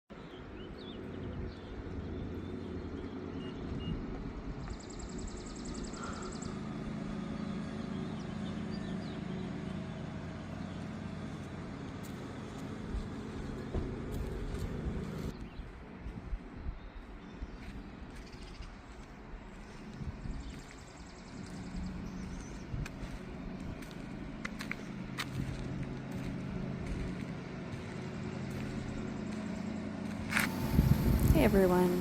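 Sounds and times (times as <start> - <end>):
small birds chirping: 0.2 - 6.7, 26.1 - 32.0
vehicle engine running: 0.8 - 15.4, 17.6 - 32.0.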